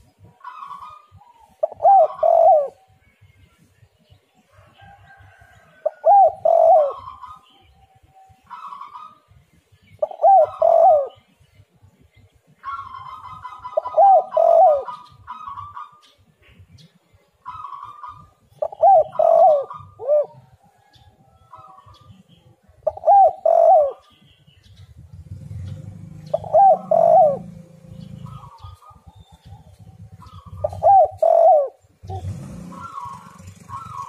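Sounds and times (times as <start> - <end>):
high bird calls: 0.0 - 3.1, 5.2 - 11.5, 12.2 - 20.5, 21.4 - 34.0
dove cooing: 0.3 - 3.0, 5.2 - 9.3, 10.0 - 11.3, 12.6 - 16.6, 17.4 - 20.9, 21.5 - 24.2, 25.1 - 34.0.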